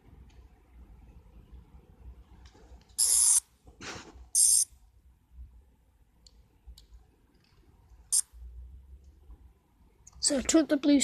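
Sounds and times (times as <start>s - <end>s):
toy high-pitched electronic buzzes: 3.0s - 3.5s, 4.3s - 4.7s.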